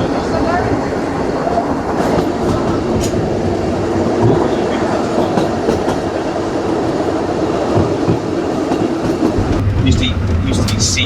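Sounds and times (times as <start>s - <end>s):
train rumbling on track: 0.0s - 11.0s
wheels clicking over rail: 8.7s - 11.0s.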